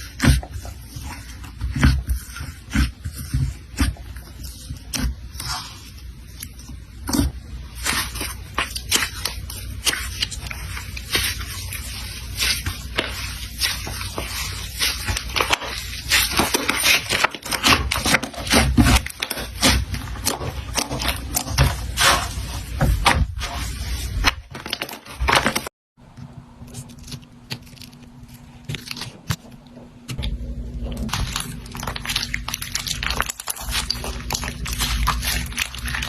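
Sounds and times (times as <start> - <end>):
slime squishing and popping: 31.0 - 36.0.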